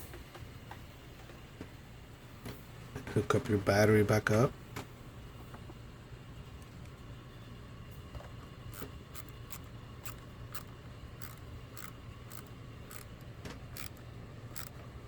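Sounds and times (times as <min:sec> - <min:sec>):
low steady hum: 0:00.0 - 0:15.0
metallic clicks of hand tools: 0:08.7 - 0:14.8.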